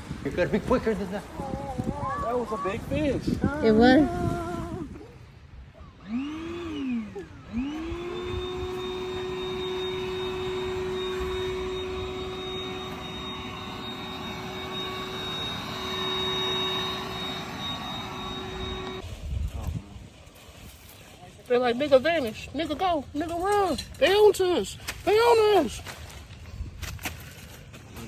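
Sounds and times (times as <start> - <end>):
motor revving with high whine: 5.8 - 19.0.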